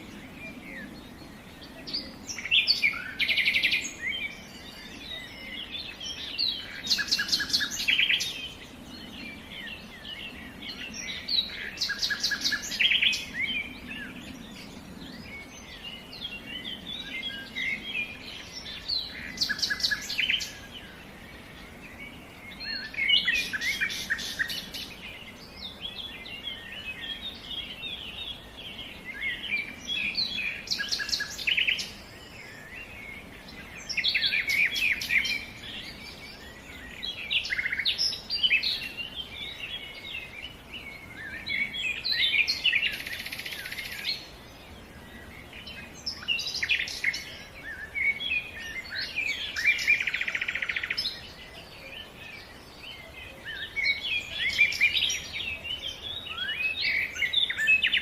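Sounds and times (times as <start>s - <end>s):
songbird trilling: 0.0s - 21.6s, 22.4s - 44.6s, 45.2s - 58.0s
bird chirps and twitters: 22.0s - 44.4s, 45.0s - 58.0s.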